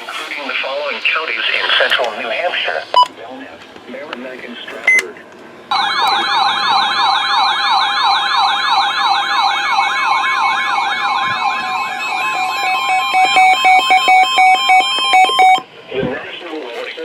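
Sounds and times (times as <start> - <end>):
steady tones: 5.6 - 15.6
warbling electronic siren tone: 5.7 - 15.6.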